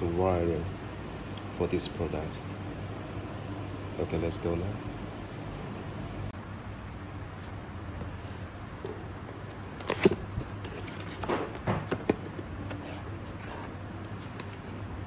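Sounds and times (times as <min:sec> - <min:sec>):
low steady hum: 0:00.0 - 0:15.0
packaging clicks and rustles: 0:07.9 - 0:15.0.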